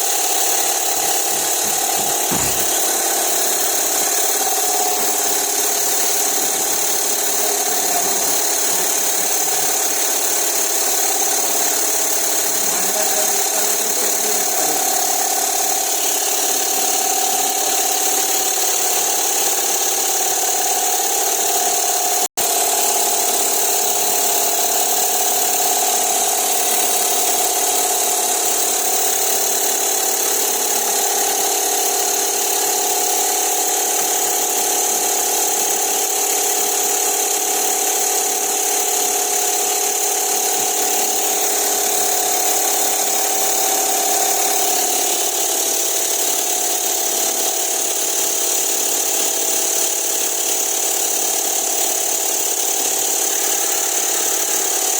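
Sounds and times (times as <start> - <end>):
motor running with hum and hiss: 0.0 - 54.9.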